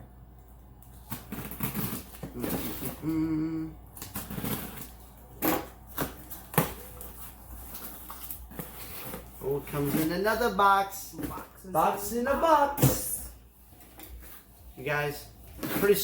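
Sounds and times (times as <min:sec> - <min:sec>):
cardboard crackling and tearing: 0:01.0 - 0:03.0.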